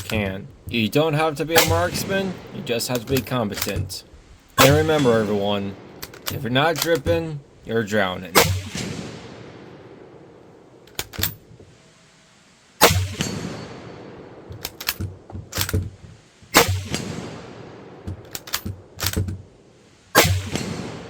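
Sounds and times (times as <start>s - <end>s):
rifle shots echoing: 0.0s - 11.5s, 12.8s - 15.8s, 16.5s - 19.2s, 20.2s - 21.0s
rifle bolt clicking: 2.9s - 3.9s, 6.0s - 7.2s, 10.9s - 11.4s, 14.5s - 15.9s, 18.1s - 19.4s.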